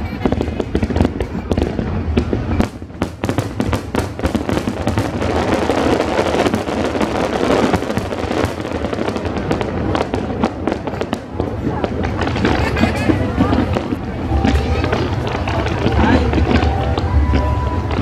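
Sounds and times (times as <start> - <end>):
fireworks bangs and crackling: 0.0 - 18.0.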